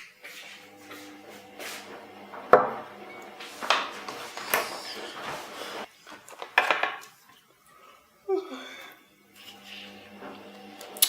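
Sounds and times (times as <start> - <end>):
hard objects knocking and clattering: 6.4 - 7.1.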